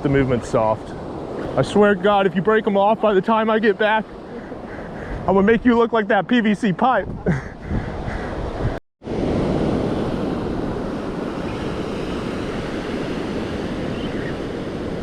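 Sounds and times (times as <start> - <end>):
ocean surf washing on beach: 0.0 - 15.0
wind on microphone: 7.0 - 15.0.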